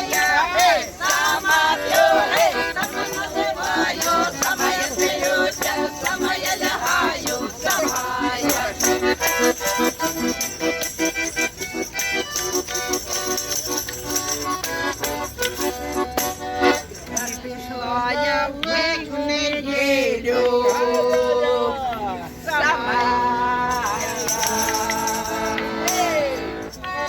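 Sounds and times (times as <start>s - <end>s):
instrumental accompaniment: 0.0s - 27.0s
person singing: 17.1s - 27.0s.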